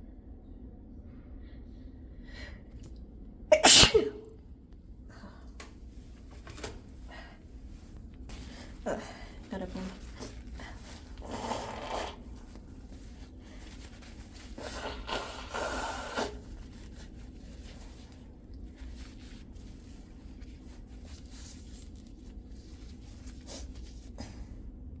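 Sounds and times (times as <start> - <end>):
nose blowing into tissue: 3.5 - 4.2, 10.2 - 12.6, 13.5 - 17.2.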